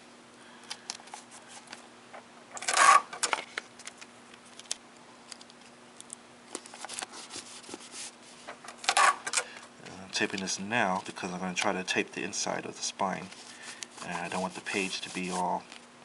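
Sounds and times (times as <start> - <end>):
faint steady hum: 0.0 - 16.0.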